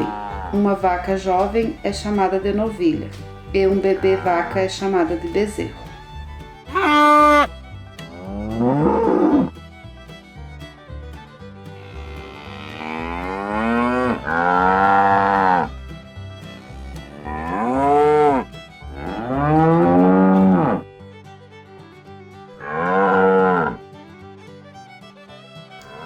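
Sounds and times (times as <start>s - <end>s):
cattle mooing: 0.0s - 0.7s, 6.7s - 7.5s, 8.2s - 9.5s, 11.8s - 15.7s, 17.2s - 18.4s, 19.0s - 20.8s, 22.6s - 23.8s.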